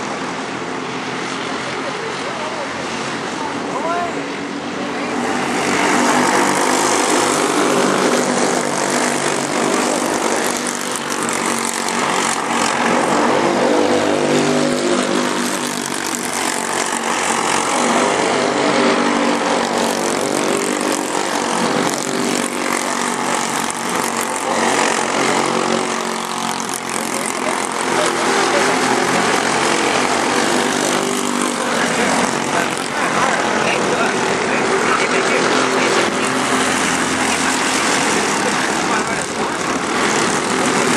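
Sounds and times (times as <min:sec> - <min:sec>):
racing kart engine revving: 0:00.0 - 0:40.9.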